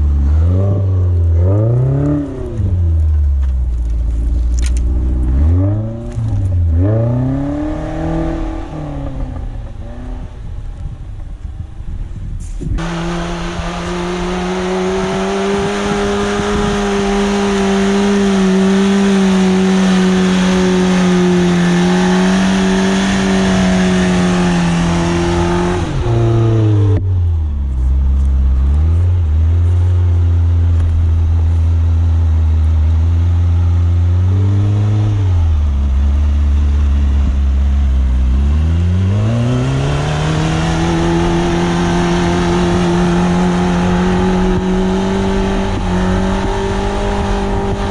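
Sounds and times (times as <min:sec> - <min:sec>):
engine revving under load: 0:04.9 - 0:10.6, 0:12.7 - 0:27.0, 0:38.1 - 0:47.9.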